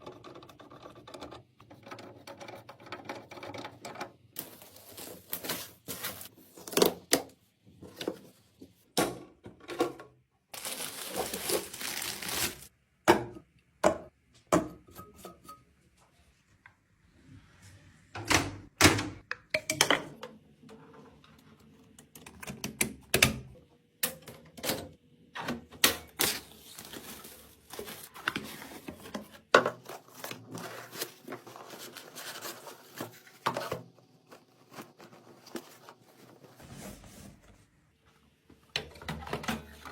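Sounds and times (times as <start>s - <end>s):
rustling: 10.6s - 12.7s.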